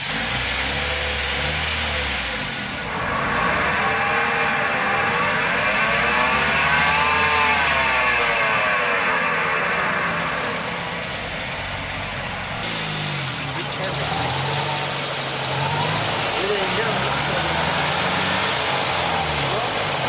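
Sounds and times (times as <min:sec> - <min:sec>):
car wheel bearing droning hum: 0:00.0 - 0:20.0.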